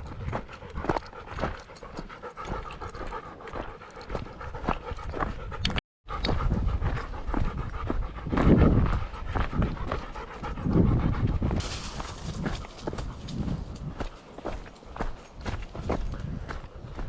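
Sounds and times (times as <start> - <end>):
dog panting: 0.0 - 17.0
low wind rumble: 4.6 - 17.0.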